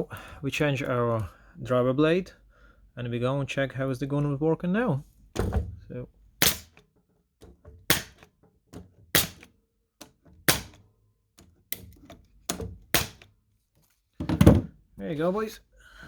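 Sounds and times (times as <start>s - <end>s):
pneumatic nailer firing: 6.4s - 6.8s, 7.9s - 8.3s, 9.1s - 9.6s, 10.4s - 10.8s, 12.9s - 13.2s.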